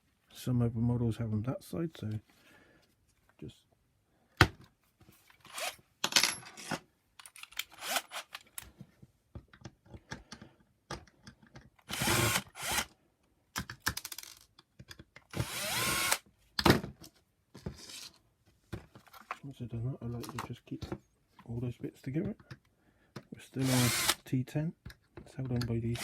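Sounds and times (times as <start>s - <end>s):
plastic parts clicking and knocking: 5.4s - 12.0s, 13.2s - 15.6s, 20.1s - 21.1s, 22.2s - 24.1s, 24.8s - 26.0s
power screwdriver running: 7.8s - 8.2s, 11.9s - 12.9s, 15.3s - 16.2s, 23.6s - 24.2s.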